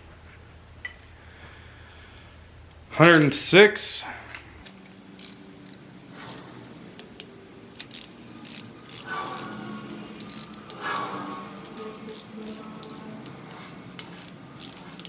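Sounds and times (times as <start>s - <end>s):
faint background music: 4.6s - 15.0s
torque wrench ratchet clicking: 4.6s - 15.0s.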